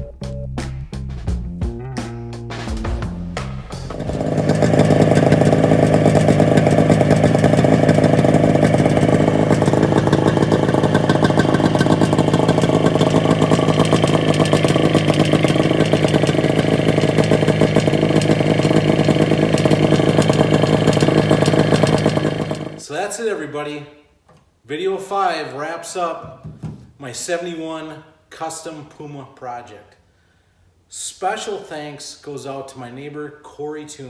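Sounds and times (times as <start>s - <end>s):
snowmobile engine running: 3.9s - 22.8s.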